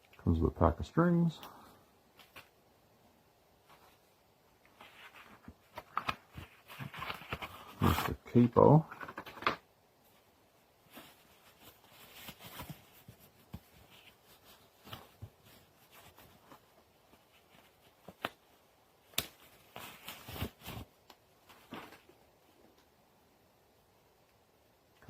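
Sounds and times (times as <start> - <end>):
packaging rustling: 4.8 - 8.2.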